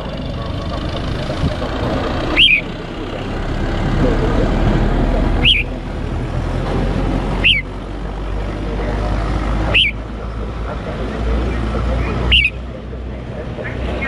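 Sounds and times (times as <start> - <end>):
bird chirping sharply: 2.3 - 2.7, 5.4 - 5.7, 7.4 - 7.7, 9.7 - 10.0, 12.1 - 12.6.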